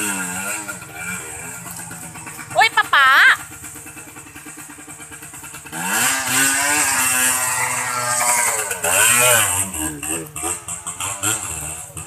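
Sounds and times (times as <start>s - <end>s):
dirt bike engine revving: 0.0s - 12.0s.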